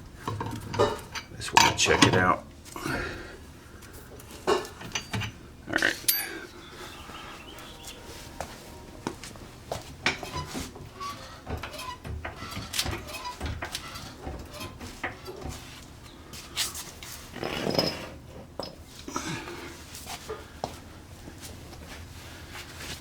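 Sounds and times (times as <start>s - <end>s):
metal clinks and knocks: 4.4s - 5.4s, 6.0s - 15.6s.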